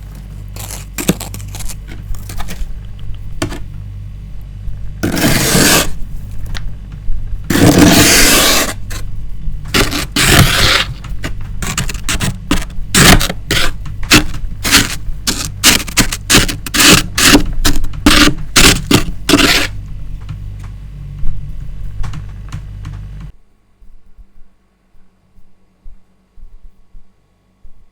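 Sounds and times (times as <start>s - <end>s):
scraping frost in freezer: 0.0s - 3.7s, 5.0s - 6.6s, 7.5s - 20.3s.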